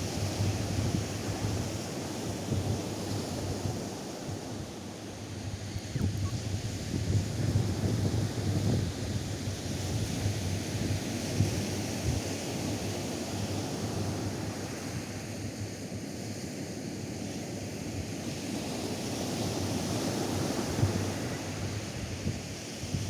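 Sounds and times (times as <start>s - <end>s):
wind buffeting microphone: 5.3s - 12.8s
surf washing onto a beach: 16.6s - 23.0s.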